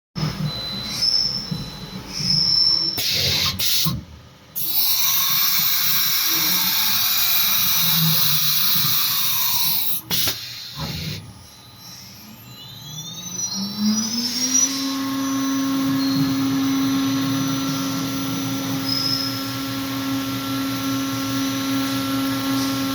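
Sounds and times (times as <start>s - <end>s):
router high whine: 4.6s - 22.9s.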